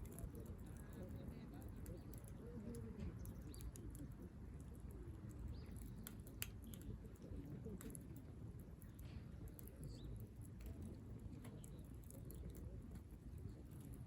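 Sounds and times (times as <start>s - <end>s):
wood fire crackling: 5.3s - 14.0s.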